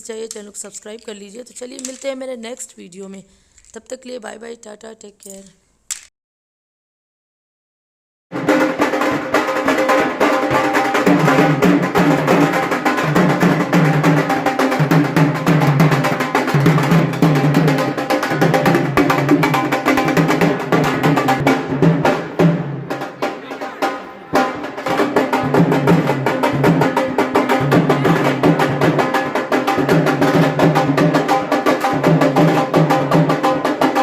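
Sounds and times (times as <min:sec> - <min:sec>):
music with fast drum beat: 0:08.3 - 0:34.0.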